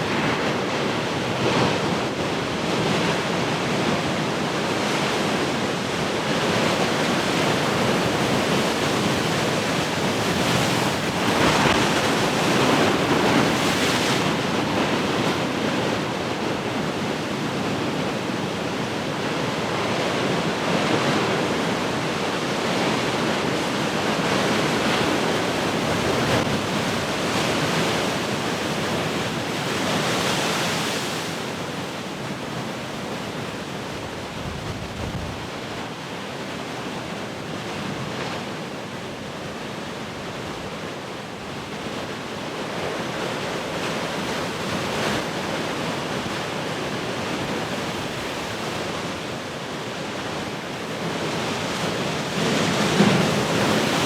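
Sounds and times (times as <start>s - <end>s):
waves breaking: 6.5s - 19.8s, 43.0s - 54.0s
wind on microphone: 33.8s - 35.6s.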